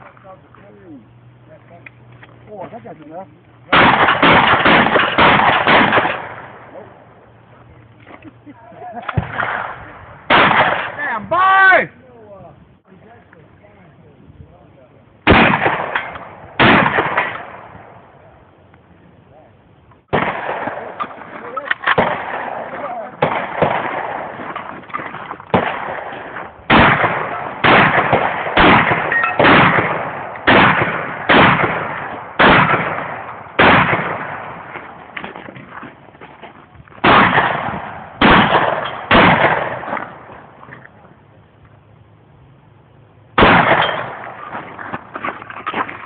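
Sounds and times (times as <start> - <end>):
shotgun shots: 3.7 - 6.8, 9.1 - 11.2, 15.2 - 18.0, 20.0 - 35.4, 37.0 - 40.5, 43.4 - 45.1.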